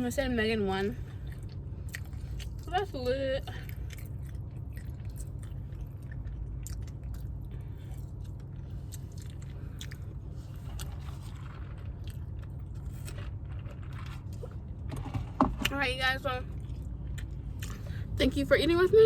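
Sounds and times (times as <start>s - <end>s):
low rumble: 0.0s - 19.0s
person chewing food: 1.0s - 2.7s, 3.4s - 15.2s, 16.5s - 18.2s.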